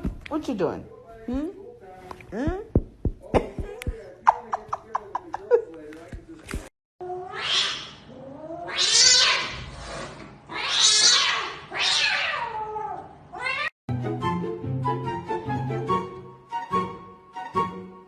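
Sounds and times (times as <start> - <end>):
cat yowling: 7.0 - 9.6, 10.5 - 13.7.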